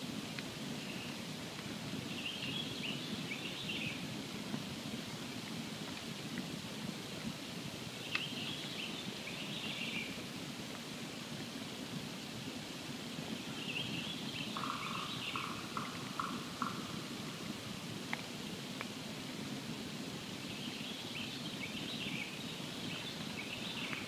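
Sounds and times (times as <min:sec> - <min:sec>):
campfire crackling and popping: 0:00.0 - 0:02.1, 0:04.0 - 0:09.4, 0:10.2 - 0:13.4, 0:14.0 - 0:21.8
bird calling: 0:13.5 - 0:17.5.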